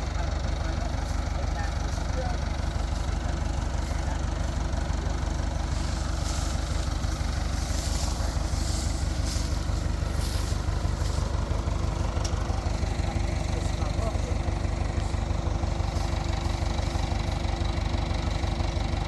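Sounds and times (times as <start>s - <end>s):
harvester engine droning: 0.0s - 19.0s
rustling hiss: 5.6s - 12.0s.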